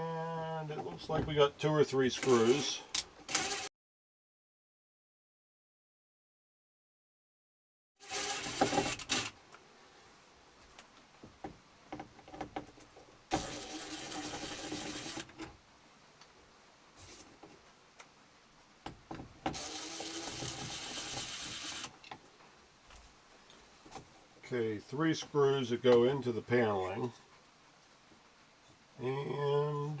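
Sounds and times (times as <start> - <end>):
cordless power driver running: 3.3 - 3.7, 19.5 - 21.9.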